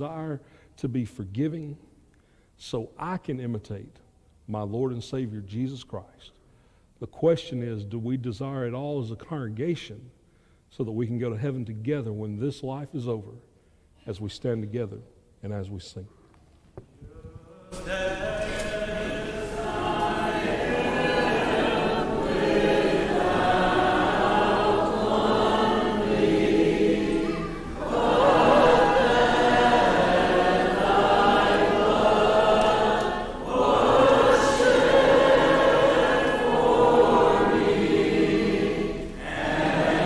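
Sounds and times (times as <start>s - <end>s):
congregation singing a hymn: 17.4s - 40.0s.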